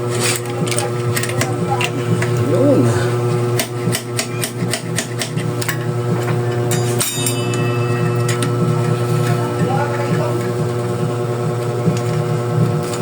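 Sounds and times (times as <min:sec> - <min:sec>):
steady hum: 0:00.5 - 0:12.9
metal clink ringing: 0:06.7 - 0:08.5.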